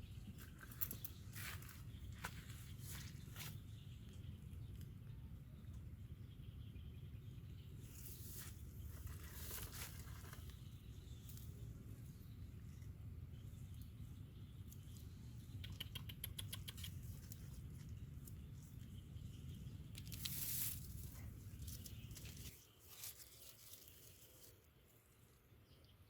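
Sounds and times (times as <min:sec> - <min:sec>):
small animals pattering: 0:08.0 - 0:11.6, 0:14.7 - 0:19.0, 0:19.9 - 0:24.7
quick clicks: 0:15.6 - 0:17.1.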